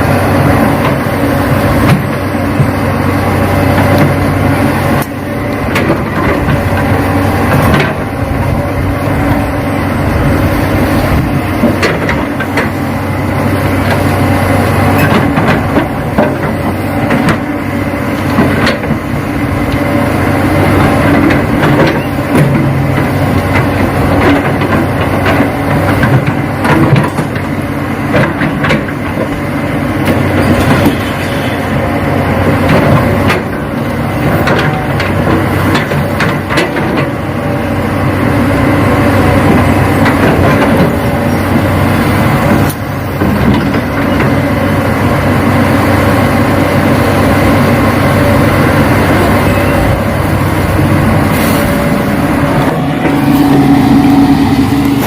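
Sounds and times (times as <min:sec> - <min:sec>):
model excavator motors humming: 0:00.0 - 0:55.0.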